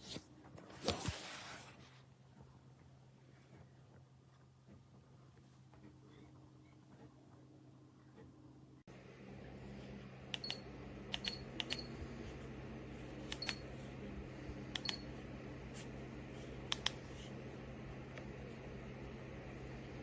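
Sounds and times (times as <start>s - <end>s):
low appliance hum: 0.0s - 20.0s
control panel button clicks: 14.8s - 15.0s.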